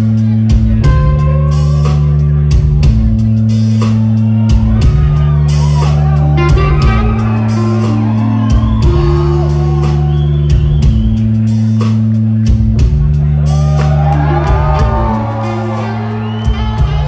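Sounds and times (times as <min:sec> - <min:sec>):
low bass notes: 0:00.0 - 0:17.0
steady drum beat: 0:00.0 - 0:17.0
guitar with bending notes: 0:06.2 - 0:10.1.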